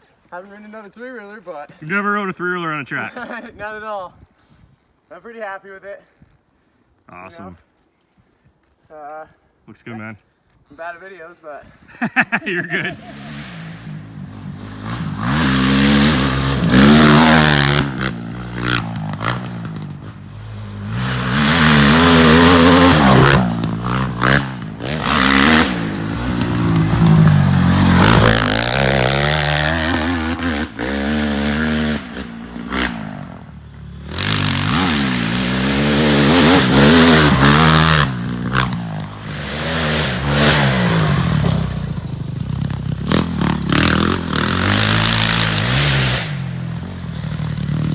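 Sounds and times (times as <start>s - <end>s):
motorcycle engine revving: 12.8s - 47.9s.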